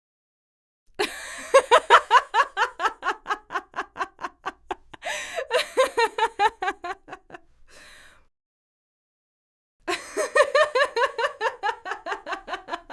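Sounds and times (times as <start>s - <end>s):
woman laughing: 1.0s - 7.4s, 9.9s - 12.9s
breathy inhale: 5.0s - 5.5s, 7.7s - 8.3s.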